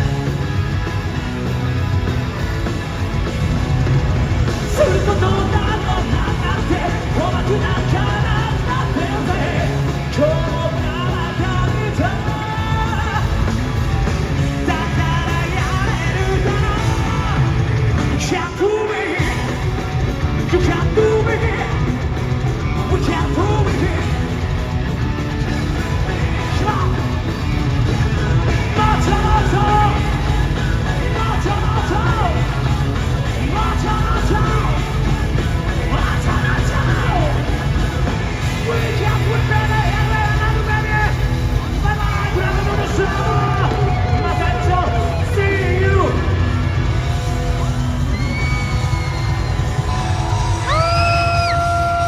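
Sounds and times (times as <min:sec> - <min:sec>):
live rock band playing: 0:00.0 - 0:52.0
person shouting and singing: 0:04.6 - 0:13.8, 0:20.4 - 0:22.0, 0:22.6 - 0:24.5, 0:25.8 - 0:47.5, 0:49.2 - 0:52.0.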